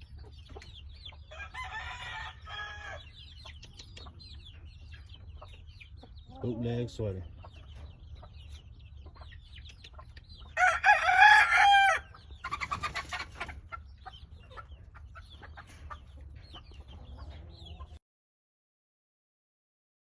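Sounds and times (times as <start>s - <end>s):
chickens clucking and chirping: 0.0s - 18.0s
rooster crowing: 1.3s - 3.1s, 10.6s - 12.1s.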